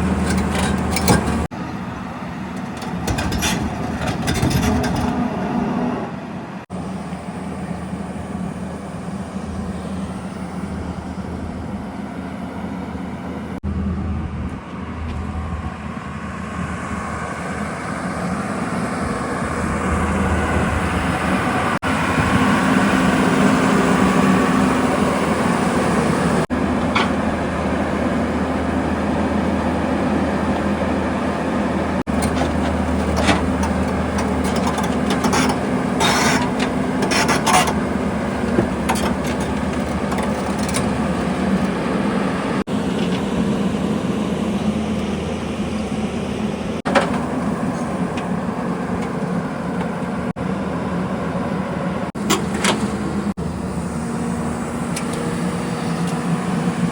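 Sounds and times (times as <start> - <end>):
metallic knocks and scrapes: 0.0 - 1.5, 2.6 - 5.4, 32.1 - 41.7
diesel engine under load: 0.0 - 56.9.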